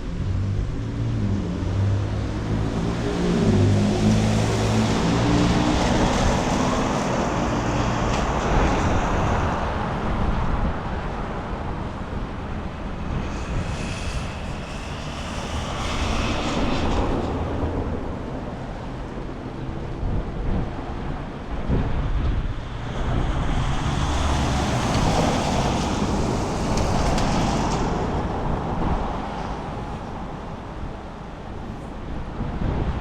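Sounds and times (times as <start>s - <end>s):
vehicle traffic passing: 0.0s - 10.2s, 21.2s - 32.2s
strong wind blowing: 0.0s - 33.0s.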